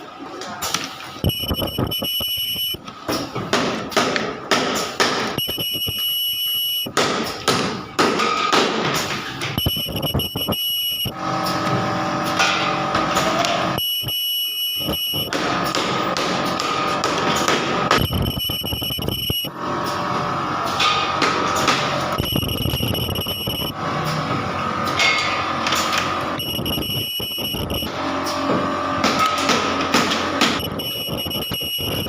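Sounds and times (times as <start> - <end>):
ultrasonic welder squeal: 1.2 - 2.8, 9.6 - 11.6, 13.7 - 15.4, 17.9 - 20.0, 22.1 - 23.8, 26.2 - 27.9, 30.5 - 32.0.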